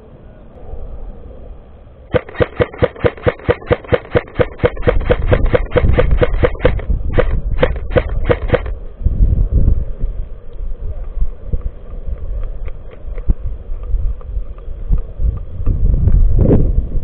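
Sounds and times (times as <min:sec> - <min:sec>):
airsoft gun shots: 0:02.1 - 0:08.8
low rumble: 0:03.2 - 0:17.0.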